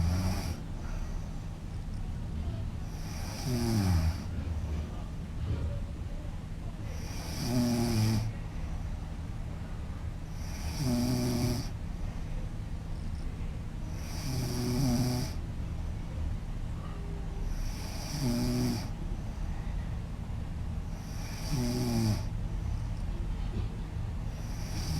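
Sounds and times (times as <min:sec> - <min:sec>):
woman snoring loudly: 0:00.0 - 0:00.6, 0:02.9 - 0:04.3, 0:07.0 - 0:08.3, 0:10.4 - 0:11.8, 0:14.0 - 0:15.4, 0:17.5 - 0:18.9, 0:21.0 - 0:22.3, 0:24.4 - 0:24.9.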